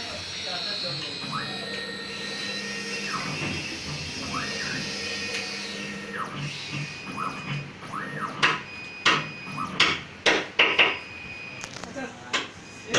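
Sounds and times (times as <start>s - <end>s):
stepper motors whining: 0.0s - 10.0s
sharp knocks: 8.4s - 11.0s.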